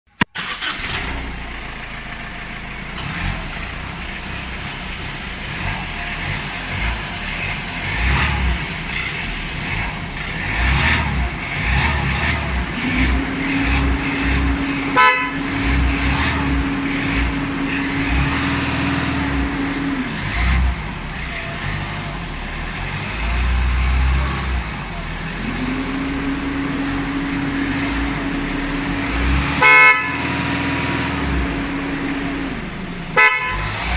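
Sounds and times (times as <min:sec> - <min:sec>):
traffic engines running: 0:00.4 - 0:33.9
car horns honking: 0:10.4 - 0:33.9.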